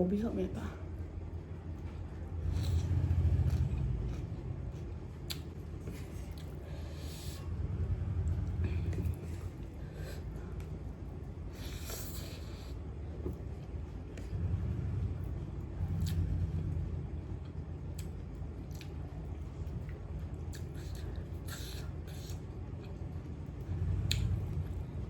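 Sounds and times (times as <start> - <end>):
low steady rumble: 0.0 - 25.0
person chewing food: 1.8 - 7.3, 17.4 - 23.1, 24.1 - 24.6.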